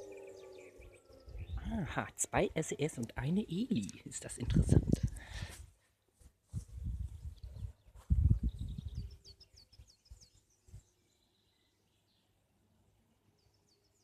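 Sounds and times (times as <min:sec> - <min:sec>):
low rumbling on microphone: 0:01.2 - 0:01.7, 0:06.6 - 0:09.2
small bird chirping: 0:07.0 - 0:12.3.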